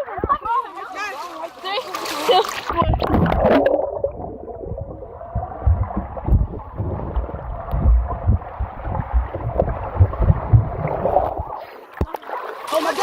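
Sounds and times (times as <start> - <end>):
underwater gurgling and sloshing: 0.0 - 13.0
low underwater thumps: 2.6 - 12.3.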